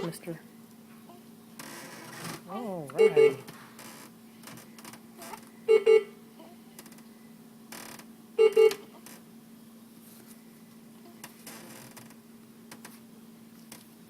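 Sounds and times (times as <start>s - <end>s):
steady low hum: 0.0s - 14.0s
electronic double beep: 3.0s - 3.4s.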